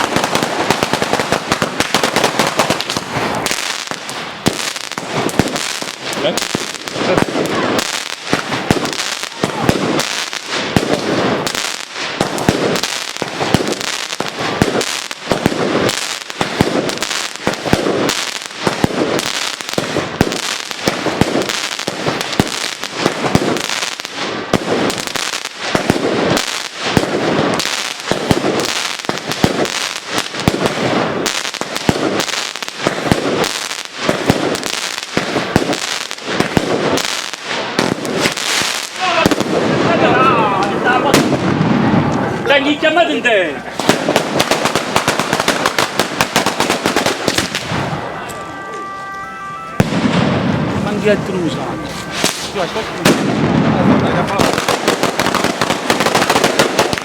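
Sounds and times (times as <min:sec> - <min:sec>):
firecrackers banging: 0:00.0 - 0:57.0.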